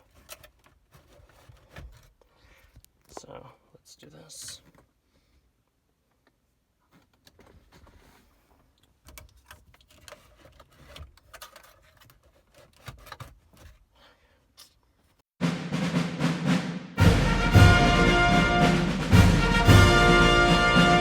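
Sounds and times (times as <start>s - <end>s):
screwdriver scraping plastic trim: 9.1s - 13.8s
orchestral music with timpani: 15.4s - 21.0s.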